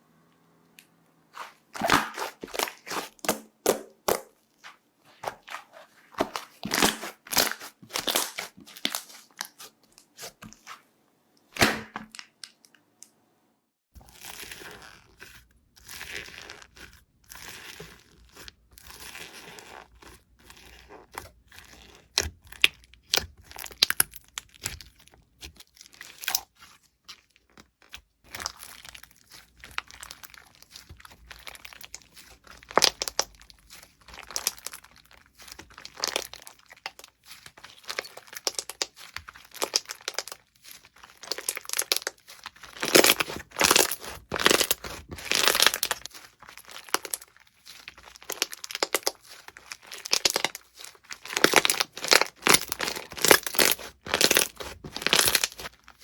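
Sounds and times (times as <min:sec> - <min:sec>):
slime crackling and popping: 0:01.4 - 0:04.3, 0:06.2 - 0:10.7, 0:20.7 - 0:26.6, 0:27.2 - 0:56.0.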